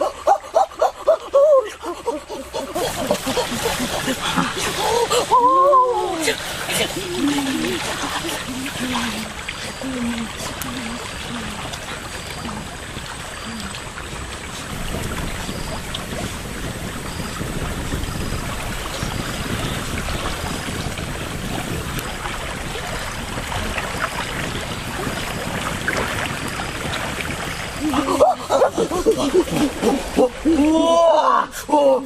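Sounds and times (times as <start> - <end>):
stream water rushing: 0.0 - 32.0.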